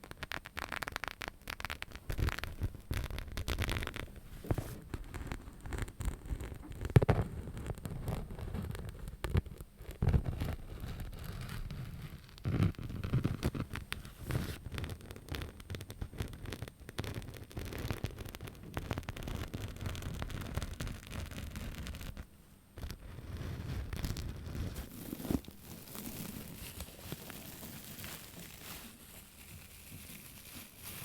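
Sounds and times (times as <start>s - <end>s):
scratching and tapping on object: 0.0s - 22.2s.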